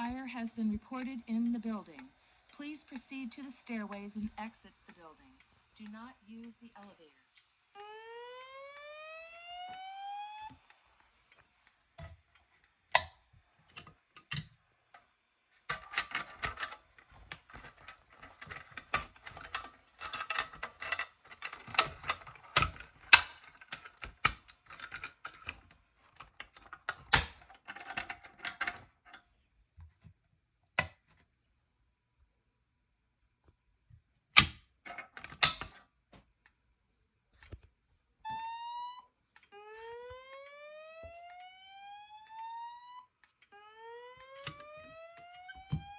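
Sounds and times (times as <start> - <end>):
fire alarm rising tone: 0.0 - 13.0, 35.4 - 45.9
clicking and rattling of handling: 15.7 - 30.0, 34.4 - 36.6.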